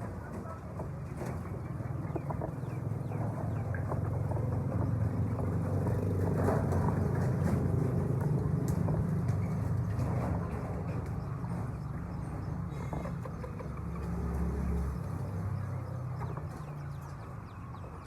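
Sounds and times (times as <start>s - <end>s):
faint bird calls: 12.7s - 14.2s.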